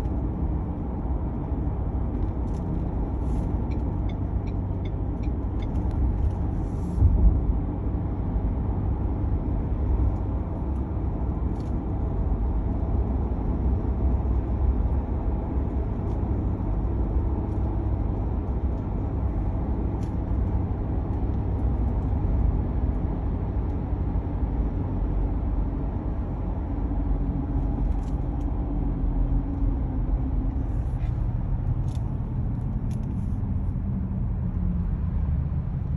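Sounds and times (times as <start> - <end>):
truck tyre and drivetrain rumble: 0.0 - 35.9
unexplained vehicle noise: 0.0 - 35.9.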